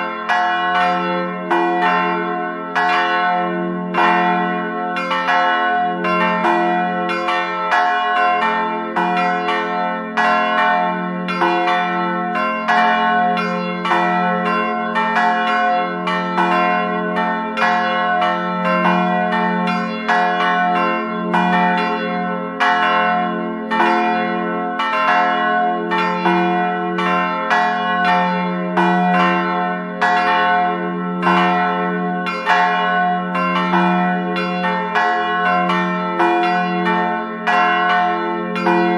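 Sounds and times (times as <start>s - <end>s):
church bells pealing: 0.0s - 38.9s.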